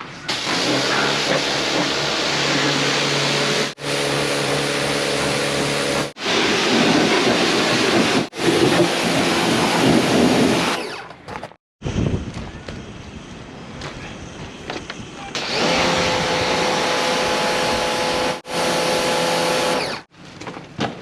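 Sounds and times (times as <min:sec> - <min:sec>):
pressure washer spray hissing: 0:00.3 - 0:10.7.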